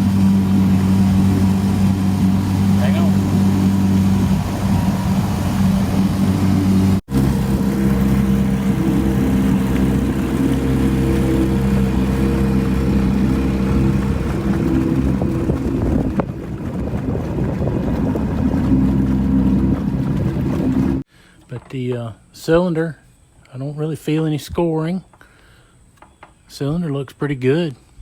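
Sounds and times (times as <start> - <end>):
motor running with loud hum: 0.0 - 21.0.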